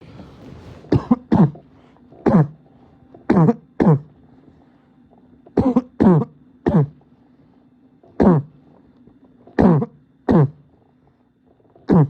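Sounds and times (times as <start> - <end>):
man's barking cough: 0.9 - 1.6, 2.2 - 2.6, 3.3 - 4.1, 5.6 - 7.0, 9.6 - 10.6.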